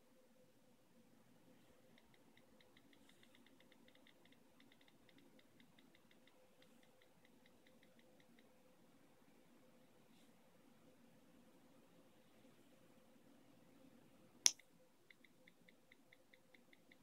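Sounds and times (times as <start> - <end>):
on-screen keyboard clicks: 1.9 - 8.5, 14.5 - 17.0.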